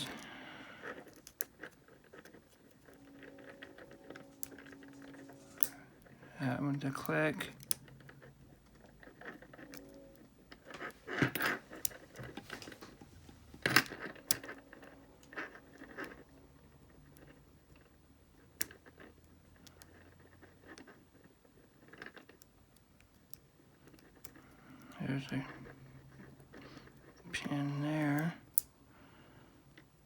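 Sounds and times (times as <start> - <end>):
lock pick clicks and scrapes: 8.8 - 16.2.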